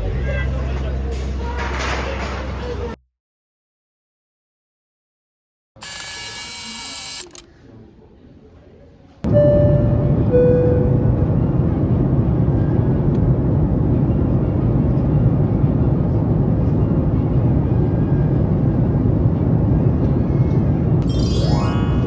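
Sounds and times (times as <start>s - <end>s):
short tone: 9.3s - 11.9s
rising tone sweep: 9.3s - 12.3s
airliner cabin engine rumble: 9.3s - 21.0s.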